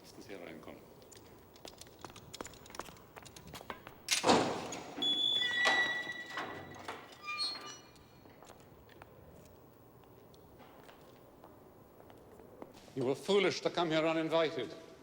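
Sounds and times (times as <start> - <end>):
heavy door thud: 4.2 - 5.0.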